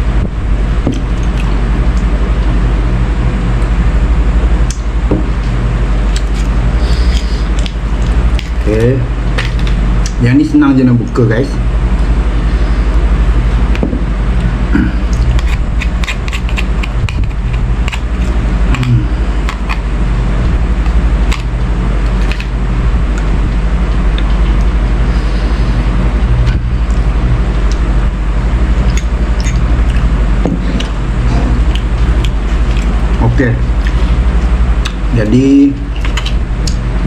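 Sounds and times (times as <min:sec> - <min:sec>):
low motor hum: 0:00.0 - 0:37.0
shellfish shells cracking: 0:06.1 - 0:10.1, 0:15.2 - 0:19.9, 0:20.8 - 0:22.6.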